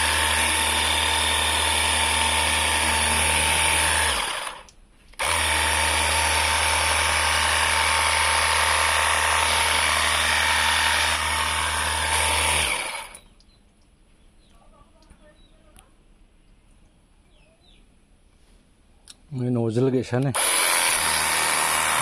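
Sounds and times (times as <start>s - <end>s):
pressure washer motor whining: 0.0s - 4.6s, 5.2s - 13.2s, 20.4s - 22.0s.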